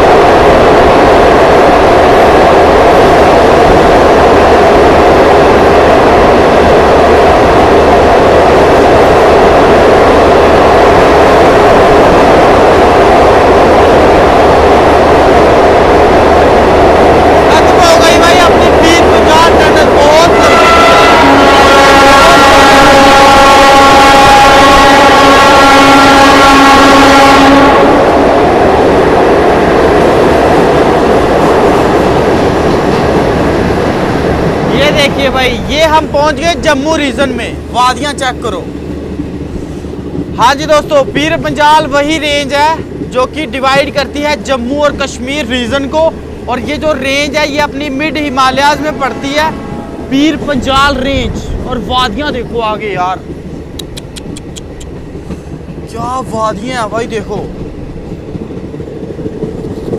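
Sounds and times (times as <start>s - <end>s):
train rumbling at speed: 0.0s - 59.9s
train horn: 20.1s - 28.5s, 48.6s - 50.2s.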